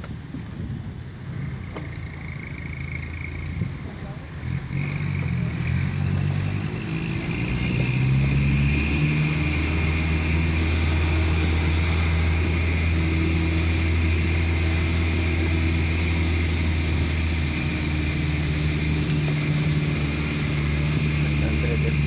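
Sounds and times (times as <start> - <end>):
bus diesel engine running: 0.0 - 22.0.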